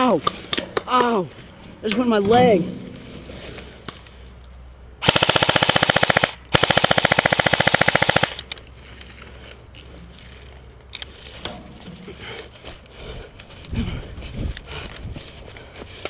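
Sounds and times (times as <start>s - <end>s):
airsoft rifle full auto bursts: 5.0s - 8.4s.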